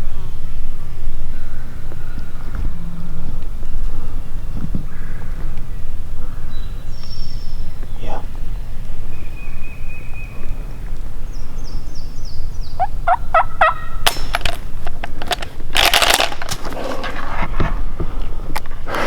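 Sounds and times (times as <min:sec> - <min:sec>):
wild turkey gobbling: 0:12.8 - 0:14.0
shotgun misfire snap: 0:14.0 - 0:14.7
gun clicks: 0:14.0 - 0:16.6
rustling: 0:14.1 - 0:19.0.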